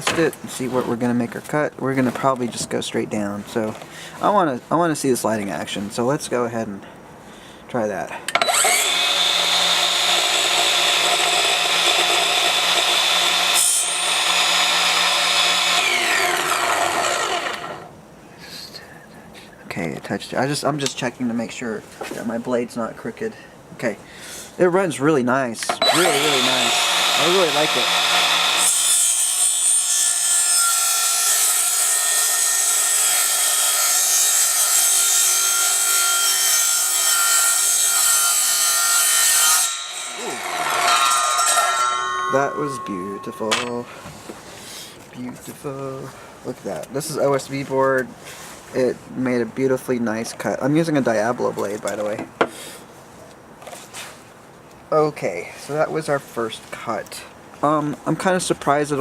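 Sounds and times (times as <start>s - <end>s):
miter saw whining: 8.4s - 17.9s, 25.8s - 44.0s.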